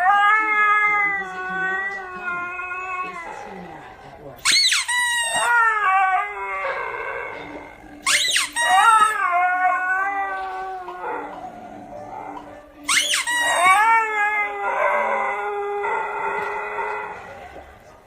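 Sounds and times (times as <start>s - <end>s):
dog howling: 0.0s - 3.9s, 5.3s - 17.8s
squeaker toy squeaking: 4.4s - 5.8s, 7.3s - 9.4s, 12.8s - 14.2s.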